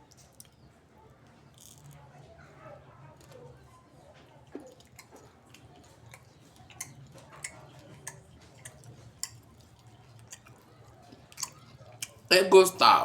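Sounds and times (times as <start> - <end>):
person crunching fish bone: 11.2 - 12.2.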